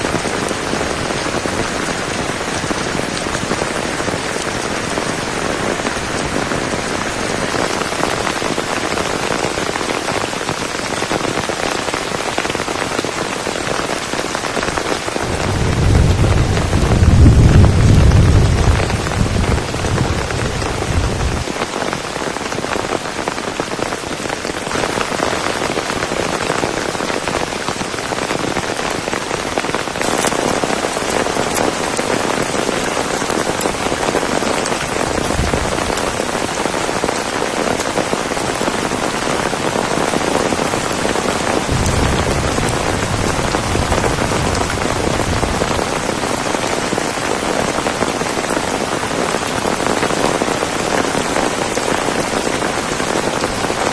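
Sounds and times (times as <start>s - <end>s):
heavy rain hissing: 0.0s - 53.9s
low rumbles: 15.3s - 21.4s, 41.7s - 45.8s.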